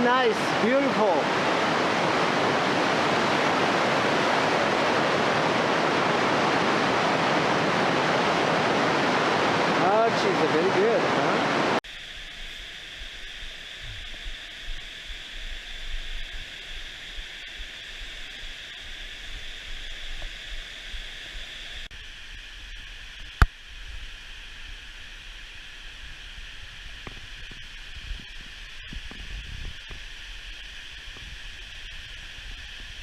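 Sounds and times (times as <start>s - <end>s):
meltwater rushing: 0.0s - 11.8s.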